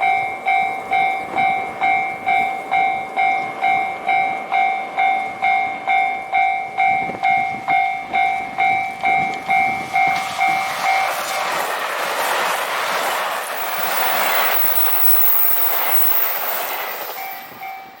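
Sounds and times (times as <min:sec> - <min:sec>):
level-crossing alarm ringing: 0:00.0 - 0:11.2, 0:13.6 - 0:18.0
diesel train engines running: 0:00.0 - 0:18.0
train wheels clattering: 0:06.4 - 0:18.0.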